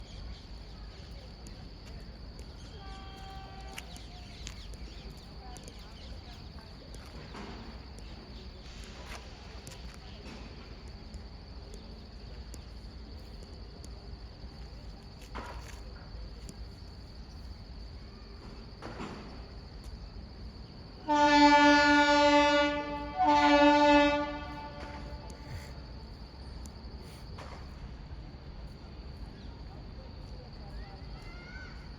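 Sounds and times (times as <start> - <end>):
locomotive air horn blasts: 2.8 - 3.9, 21.0 - 25.8.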